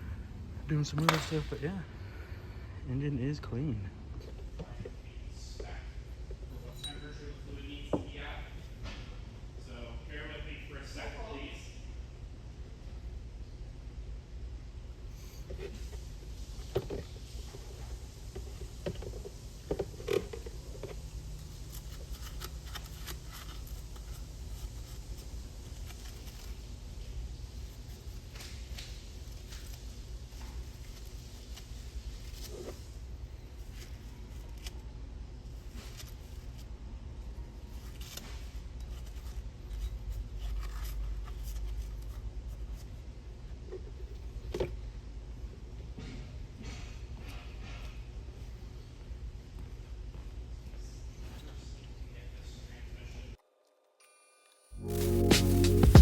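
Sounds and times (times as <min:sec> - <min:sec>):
steady low hum: 0:00.0 - 0:53.4
faint handling scrapes and clicks: 0:15.1 - 0:26.8, 0:27.4 - 0:34.8, 0:35.4 - 0:36.7, 0:37.6 - 0:43.1.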